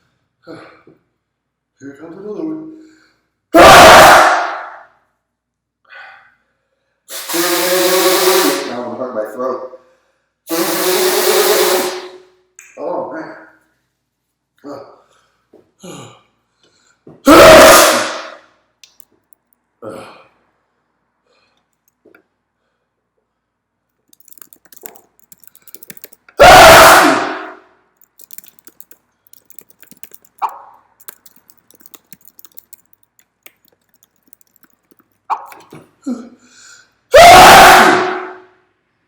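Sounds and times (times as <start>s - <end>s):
person sneezing: 17.3s - 18.4s.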